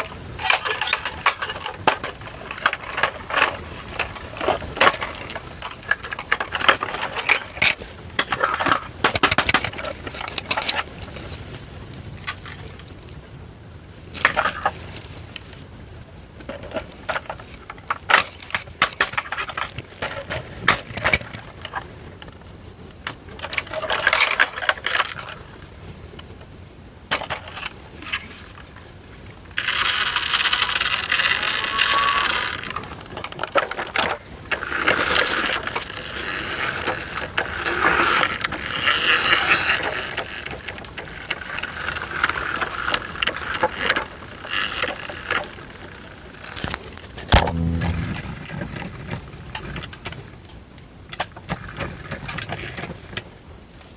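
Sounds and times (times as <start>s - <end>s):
toy excavator motors whirring: 29.6s - 32.9s.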